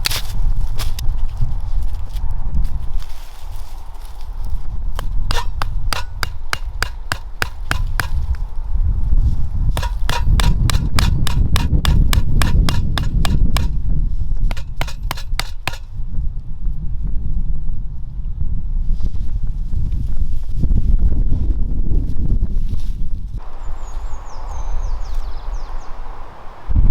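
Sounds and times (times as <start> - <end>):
low wind rumble on microphone: 0.0 - 26.9
hammering blows: 5.0 - 8.5, 9.8 - 13.8, 14.5 - 15.9.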